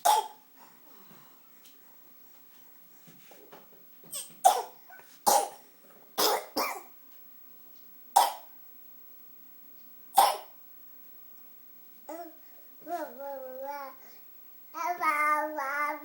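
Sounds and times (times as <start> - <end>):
baby coughing: 0.0 - 0.4, 4.1 - 5.6, 6.2 - 6.9, 8.2 - 8.5, 10.2 - 10.6.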